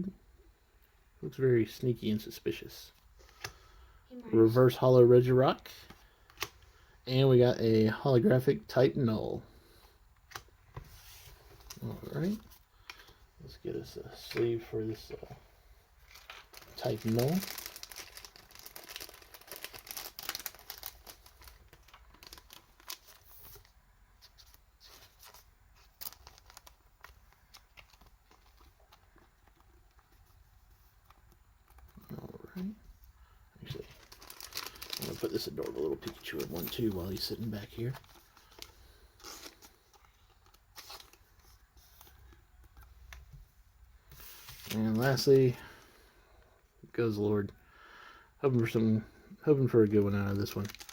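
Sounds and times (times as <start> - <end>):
plastic sleeves crinkling: 16.0 - 43.4, 44.1 - 45.9, 49.6 - 50.9.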